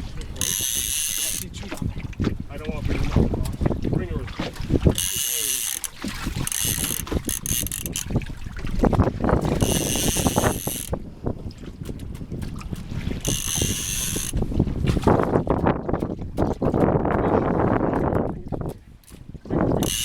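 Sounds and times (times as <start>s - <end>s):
boat rumble: 0.0s - 20.0s
wind: 0.0s - 20.0s
fishing reel ratchet buzzing: 0.4s - 1.5s, 4.9s - 8.1s, 9.6s - 11.0s, 13.2s - 14.4s.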